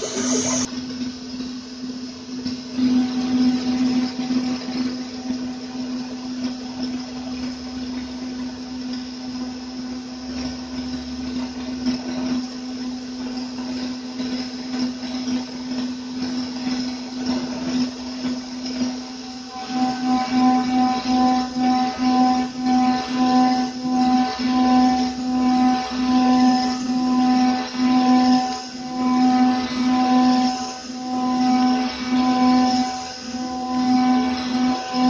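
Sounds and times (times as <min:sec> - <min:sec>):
gritty metal cutting noise: 0:00.0 - 0:00.7, 0:14.3 - 0:35.0
router spindle whine: 0:00.0 - 0:35.0.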